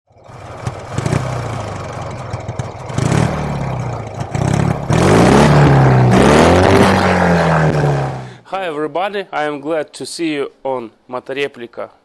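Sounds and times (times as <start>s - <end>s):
motorcycle engine revving: 0.1s - 8.4s.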